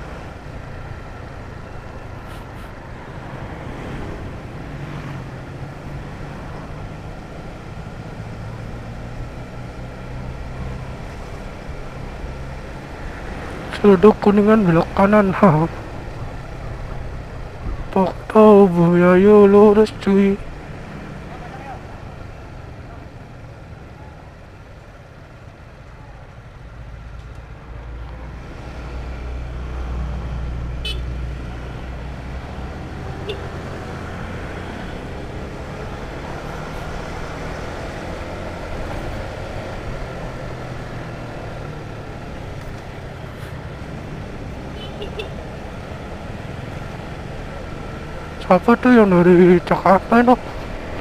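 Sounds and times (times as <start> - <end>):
traffic noise: 0.0 - 51.0.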